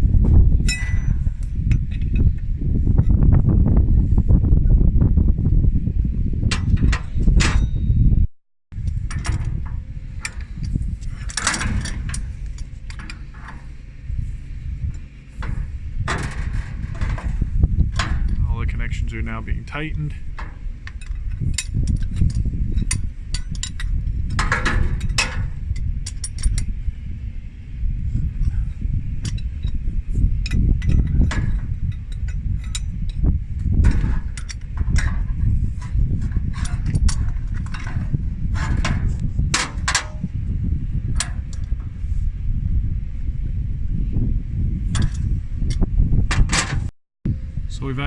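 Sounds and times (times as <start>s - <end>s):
steady low rumble: 0.0s - 48.0s
wrenches clinking on metal fittings: 20.3s - 26.7s.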